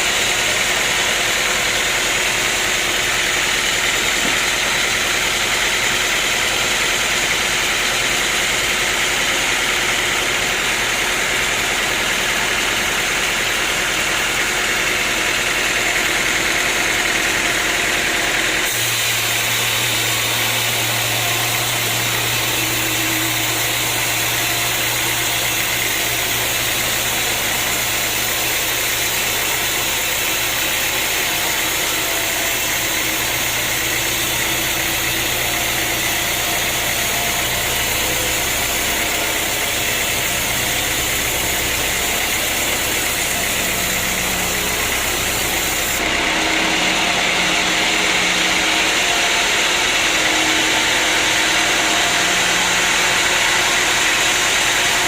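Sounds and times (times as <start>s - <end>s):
sawmill motor droning with hiss: 0.0s - 55.0s
machine low hum: 18.7s - 55.0s.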